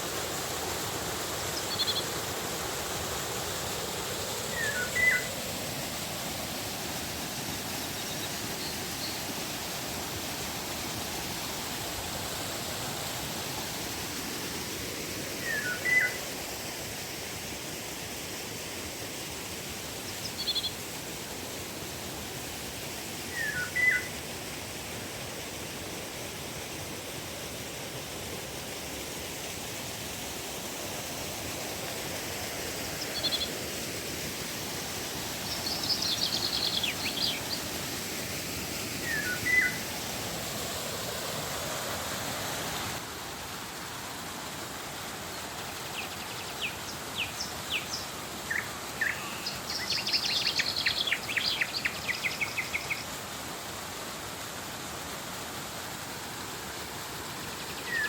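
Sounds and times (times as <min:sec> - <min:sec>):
river water flowing: 0:00.0 - 0:58.0
birds calling: 0:04.5 - 0:05.3, 0:39.0 - 0:39.9.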